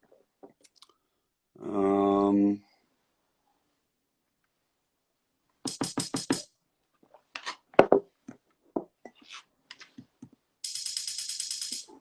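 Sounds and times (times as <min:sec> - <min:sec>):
drum machine hits: 0:05.7 - 0:06.5, 0:10.6 - 0:11.9.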